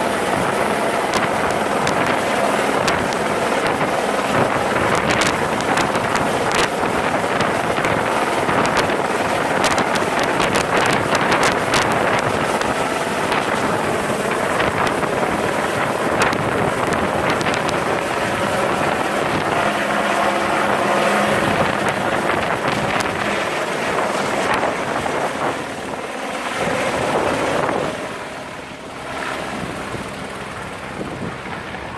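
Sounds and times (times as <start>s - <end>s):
helicopter rotor and engine: 0.0s - 31.9s
wind buffeting microphone: 0.0s - 31.9s.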